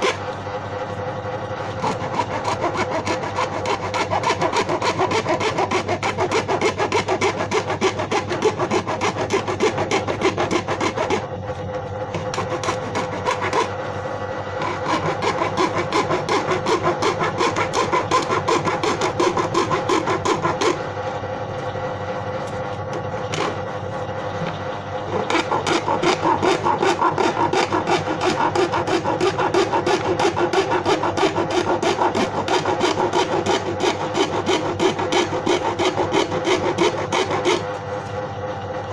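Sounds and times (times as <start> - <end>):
hand tool rasping on plastic: 1.8 - 11.2, 12.2 - 13.7, 14.6 - 20.8, 25.1 - 37.7.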